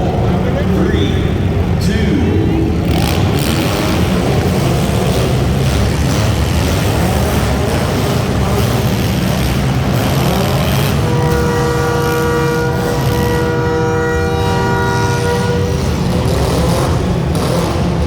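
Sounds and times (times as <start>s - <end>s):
racing car engines revving: 0.0s - 18.0s.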